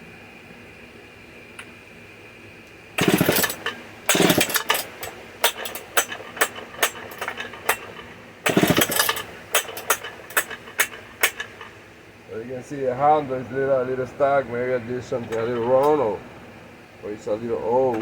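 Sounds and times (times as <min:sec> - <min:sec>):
chainsaw engine cranking: 0:03.0 - 0:11.8.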